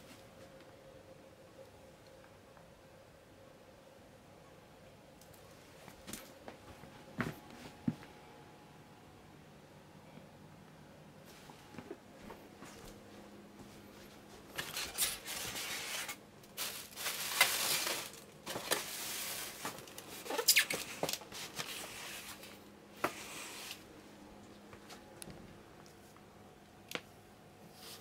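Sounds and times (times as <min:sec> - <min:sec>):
faint low hum: 0:00.0 - 0:28.0
clicks and squeaks: 0:20.2 - 0:21.2.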